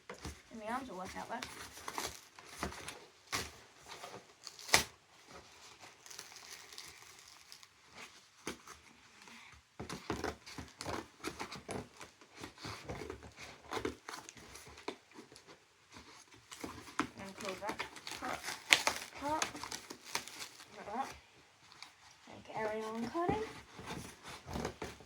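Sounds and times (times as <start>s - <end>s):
cardboard box tearing: 1.1s - 5.0s, 9.8s - 21.2s, 22.6s - 25.0s
rustling and knocks: 9.8s - 25.0s.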